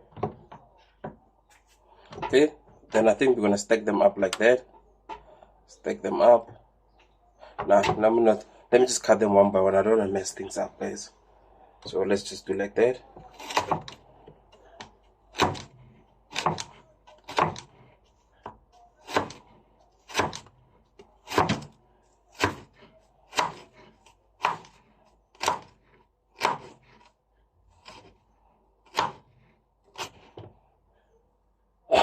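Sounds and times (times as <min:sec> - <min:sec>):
knife chopping on cutting board: 0:15.4 - 0:17.7, 0:18.4 - 0:19.4, 0:20.1 - 0:20.5, 0:21.2 - 0:24.8, 0:25.4 - 0:25.8, 0:26.4 - 0:27.1, 0:28.9 - 0:29.2.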